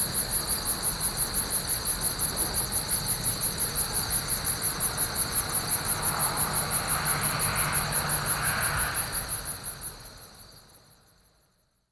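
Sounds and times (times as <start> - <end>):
crickets chirping: 0.0 - 11.6
traffic noise: 4.4 - 11.0.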